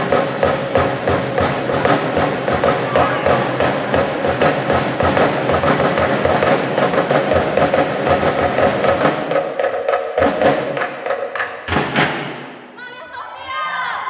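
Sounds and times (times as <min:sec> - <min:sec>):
rhythmic drum percussion music: 0:00.0 - 0:12.8.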